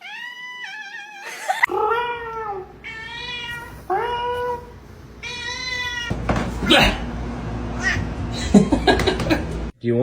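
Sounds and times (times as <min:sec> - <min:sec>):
cat meowing: 0:00.0 - 0:06.1, 0:07.8 - 0:08.1.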